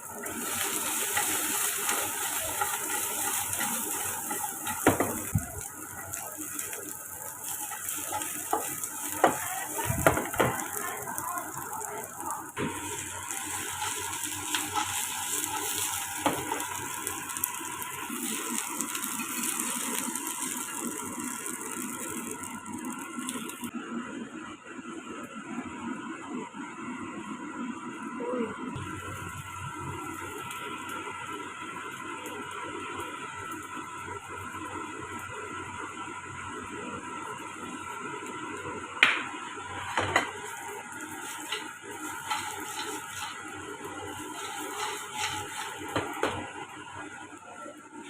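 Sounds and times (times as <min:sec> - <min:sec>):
food sizzling in a pan: 0:00.0 - 0:23.8, 0:26.0 - 0:48.0
spatula knocking and scraping pan: 0:02.6 - 0:05.3, 0:44.4 - 0:46.4.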